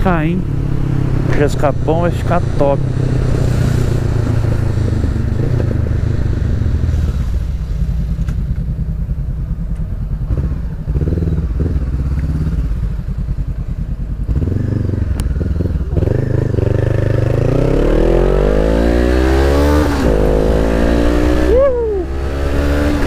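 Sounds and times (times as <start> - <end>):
motorcycle engine riding along: 0.0 - 23.0.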